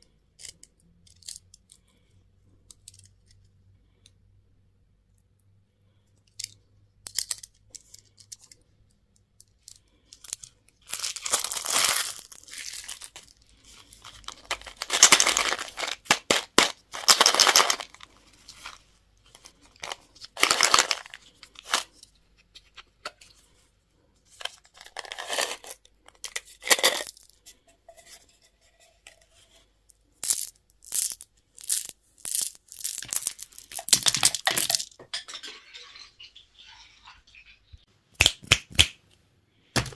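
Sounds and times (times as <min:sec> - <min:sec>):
candy wrapper tearing: 0:09.7 - 0:18.8, 0:19.4 - 0:21.9, 0:30.2 - 0:35.0
wrapper crinkling and rustling: 0:10.2 - 0:22.0, 0:30.3 - 0:36.4.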